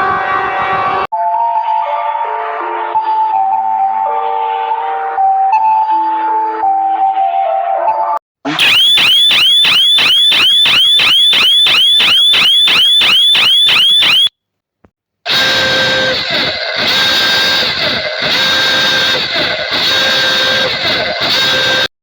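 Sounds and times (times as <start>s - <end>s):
harsh steady siren tone: 0.0s - 1.9s, 8.5s - 14.4s, 15.3s - 21.9s
electronic siren yelping: 8.5s - 14.3s, 15.3s - 21.9s.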